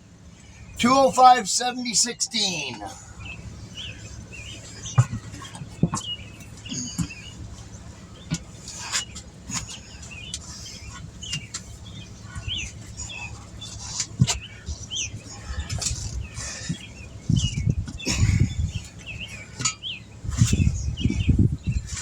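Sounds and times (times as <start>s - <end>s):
small birds chirping: 0.0s - 22.0s
sharp knocks and clunks: 4.9s - 7.2s.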